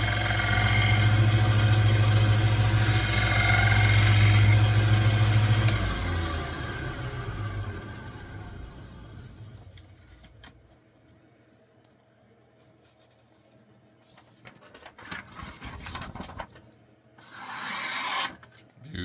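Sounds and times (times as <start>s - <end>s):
belt sander motor hum: 0.0s - 9.6s.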